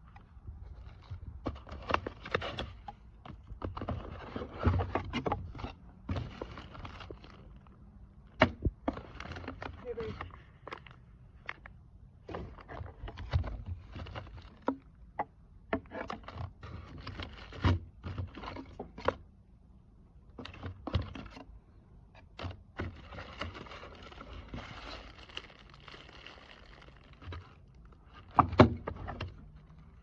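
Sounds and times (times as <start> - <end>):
packaging rustle: 6.2 - 7.7, 22.9 - 28.4
hands handling box and parts: 8.4 - 19.3, 22.1 - 30.0.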